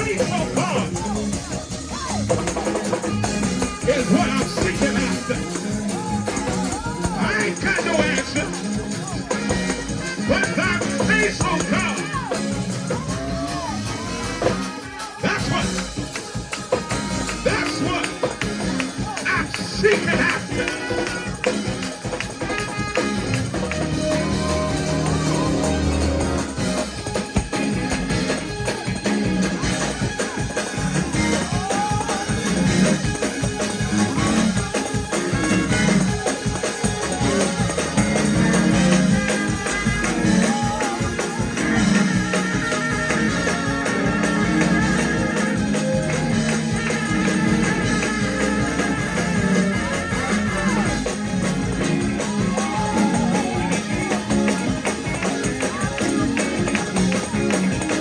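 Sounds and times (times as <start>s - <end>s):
tambourine shaking: 0.0s - 13.8s, 14.6s - 58.0s
fast driving church music beat: 0.0s - 58.0s
low bass line: 22.8s - 30.1s, 41.4s - 58.0s.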